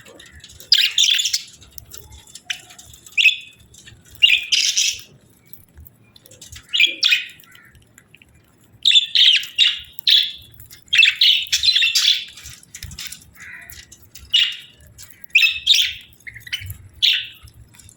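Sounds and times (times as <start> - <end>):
budgerigars chirping: 0.1 - 1.6, 2.5 - 3.6, 4.2 - 5.1, 6.6 - 7.7, 8.8 - 12.4, 13.4 - 17.5.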